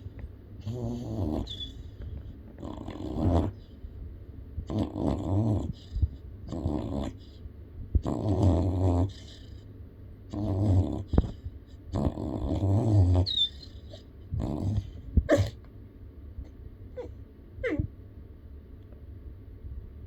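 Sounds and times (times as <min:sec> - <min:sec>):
puppy snoring: 0:00.6 - 0:03.8, 0:04.6 - 0:07.4, 0:08.0 - 0:09.7, 0:10.3 - 0:15.6, 0:17.0 - 0:17.9
puppy squeaks: 0:13.2 - 0:13.9, 0:17.6 - 0:17.9.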